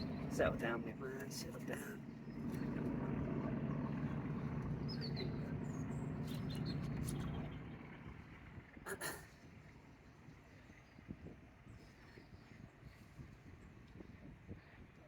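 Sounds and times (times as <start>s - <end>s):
low rumble: 0.0s - 8.9s
small bird chirping: 4.9s - 7.7s.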